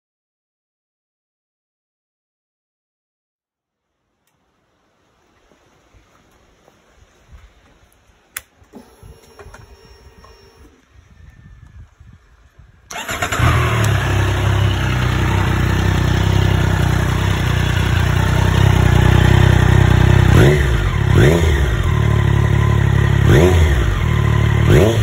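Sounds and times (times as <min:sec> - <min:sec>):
motorcycle engine starting and idling: 0:08.4 - 0:10.8, 0:12.8 - 0:25.0.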